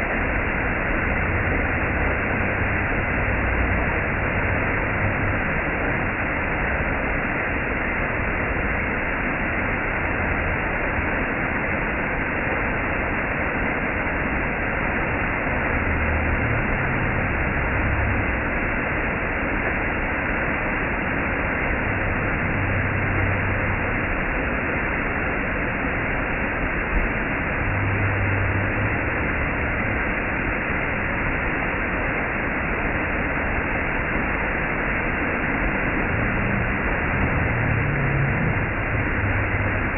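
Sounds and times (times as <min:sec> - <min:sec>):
waterfall rushing: 0:20.0 - 0:39.9.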